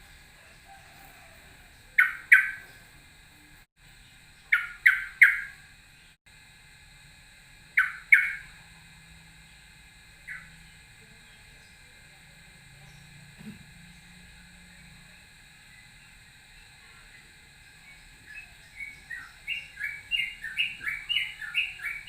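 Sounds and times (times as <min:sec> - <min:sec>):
bird giving sharp calls: 0:02.0 - 0:02.7, 0:04.5 - 0:05.6, 0:07.8 - 0:08.5.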